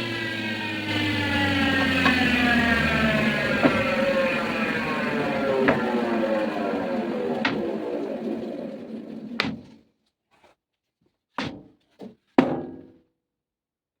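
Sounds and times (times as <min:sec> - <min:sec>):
saw motor winding down: 0:00.0 - 0:09.8.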